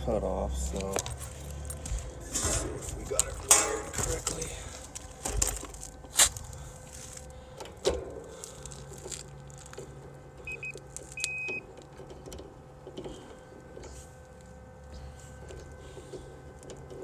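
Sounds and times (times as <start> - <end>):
electronic meter beeps: 10.4 - 11.7.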